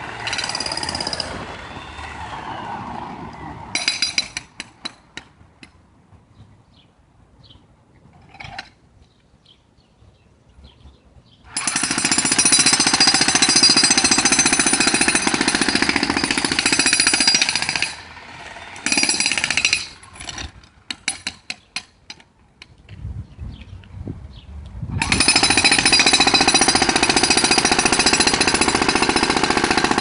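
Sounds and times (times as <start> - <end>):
jackhammer hammering: 0.0 - 2.7, 3.8 - 5.0, 11.5 - 21.7, 25.0 - 30.0.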